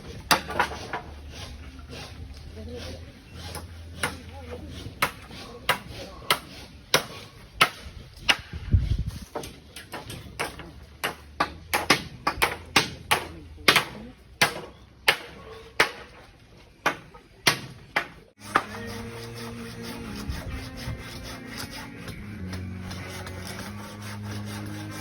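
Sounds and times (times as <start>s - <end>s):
rasping sawing: 0.0s - 9.5s, 18.4s - 25.0s.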